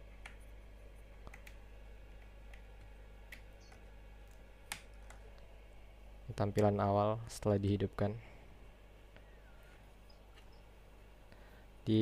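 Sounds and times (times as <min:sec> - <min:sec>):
faint steady hum: 0:00.0 - 0:12.0
keyboard and cable clicks: 0:01.2 - 0:05.2.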